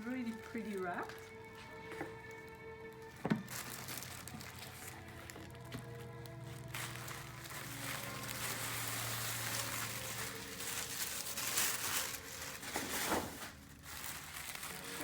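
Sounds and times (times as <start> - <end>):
wrapping paper rustling: 0.0 - 15.0.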